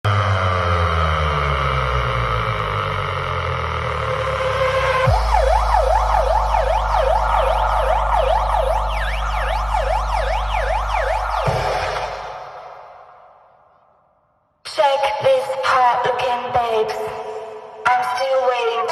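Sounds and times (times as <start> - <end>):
deep bass: 0.0 - 13.8
falling sweep with heavy bass: 0.1 - 13.6
electronic siren effect wailing: 0.1 - 13.8.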